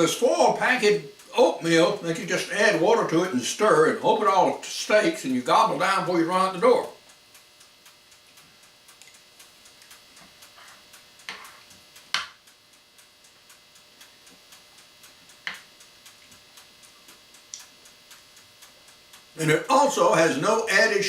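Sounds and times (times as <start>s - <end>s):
mechanical ticking: 0.0s - 21.0s
sharp clicks: 15.5s - 19.3s.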